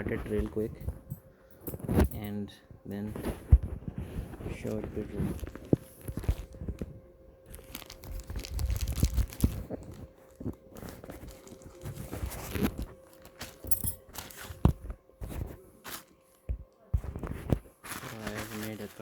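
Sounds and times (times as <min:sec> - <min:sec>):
plastic packaging crinkling: 0:04.4 - 0:14.9, 0:15.8 - 0:16.5, 0:17.2 - 0:19.0.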